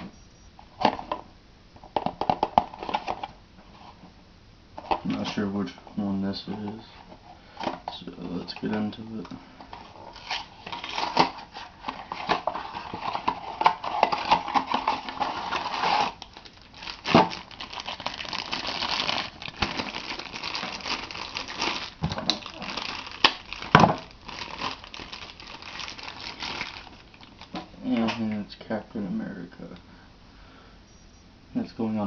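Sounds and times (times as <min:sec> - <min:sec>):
wrapping crinkling and tearing: 0:09.7 - 0:27.8.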